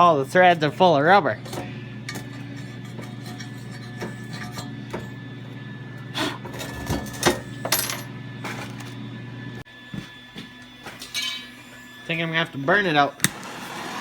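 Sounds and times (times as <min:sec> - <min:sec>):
steady low hum: 0:00.0 - 0:13.2
hand tool clinking on metal: 0:01.4 - 0:05.0
rasping strokes: 0:01.4 - 0:05.2.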